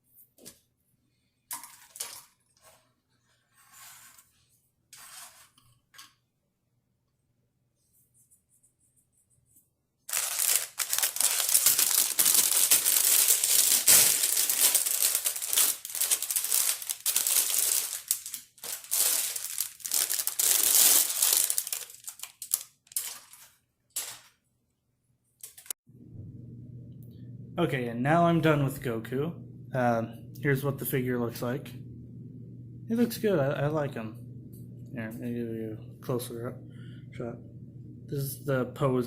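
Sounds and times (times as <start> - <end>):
plastic packaging crinkling: 10.1 - 24.3.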